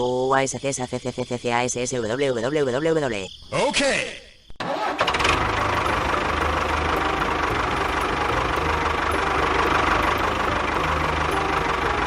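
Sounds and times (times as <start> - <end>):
small tractor engine running: 4.6 - 12.0.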